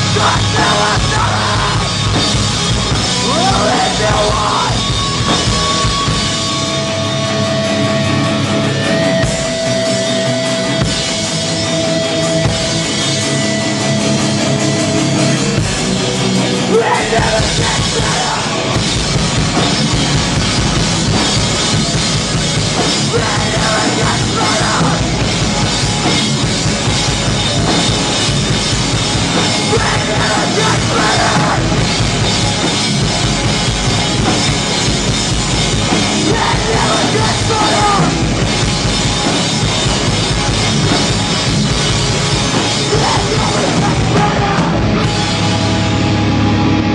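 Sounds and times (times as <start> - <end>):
person singing: 0.0 - 2.0, 3.2 - 4.9, 23.0 - 25.1, 29.6 - 31.8, 36.2 - 38.2, 42.8 - 44.9
distorted guitars: 0.0 - 46.9
hardcore band playing live: 0.0 - 46.9
bass and kick drum: 17.2 - 46.9.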